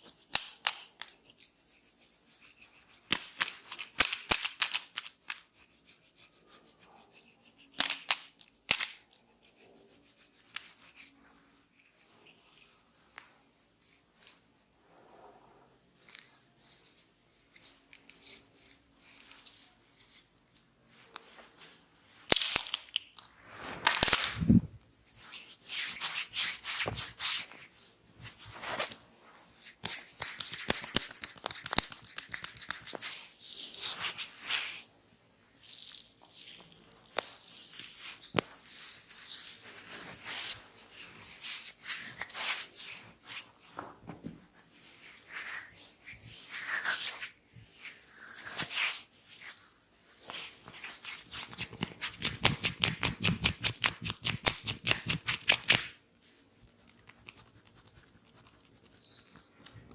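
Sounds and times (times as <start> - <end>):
hands rubbing hair and scalp: 0.0 - 14.4, 16.0 - 34.9, 35.8 - 56.0
sharp cracks and slaps: 29.8 - 33.0, 51.4 - 56.0.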